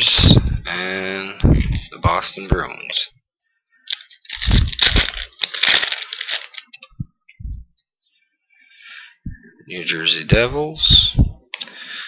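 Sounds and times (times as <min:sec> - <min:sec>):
soft low thumps: 0:01.4 - 0:01.8, 0:07.0 - 0:07.8, 0:10.8 - 0:11.4
foil wrapper crinkling and tearing: 0:03.9 - 0:06.9.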